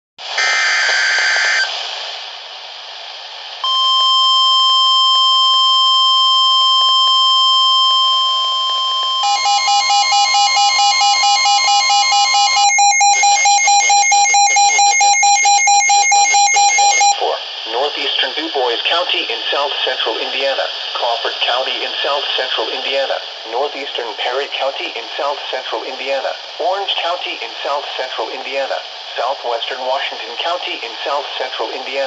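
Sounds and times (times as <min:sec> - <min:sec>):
screech of data tones: 0:00.4 - 0:01.8, 0:08.5 - 0:17.2
steady alarm tone: 0:03.6 - 0:17.2
fast beeping: 0:08.9 - 0:17.2.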